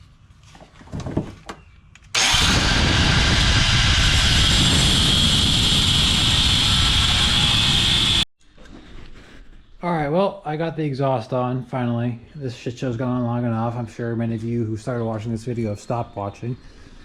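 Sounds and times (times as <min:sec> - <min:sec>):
metal grinder whining: 0:02.2 - 0:08.3.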